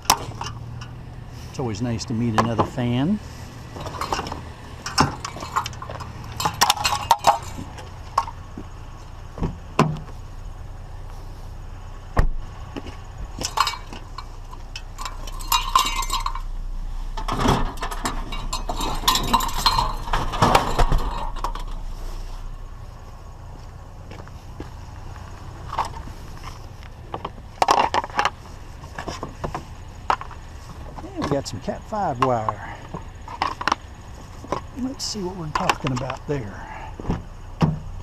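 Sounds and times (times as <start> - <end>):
scrap metal clinks and rattles: 0.0 - 1.0, 1.6 - 8.5, 13.0 - 22.5, 25.1 - 36.5
low steady hum: 0.0 - 38.0.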